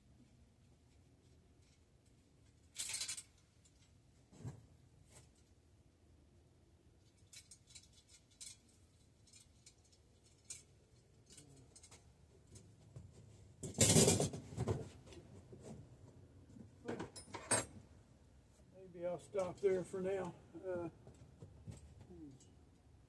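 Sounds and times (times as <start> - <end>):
metal parts clattering: 2.7 - 3.9, 7.0 - 12.0, 13.6 - 14.4.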